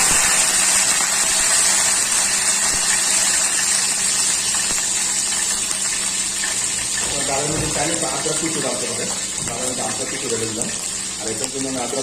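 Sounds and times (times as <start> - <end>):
leaves sizzling in hot oil: 0.0 - 12.0.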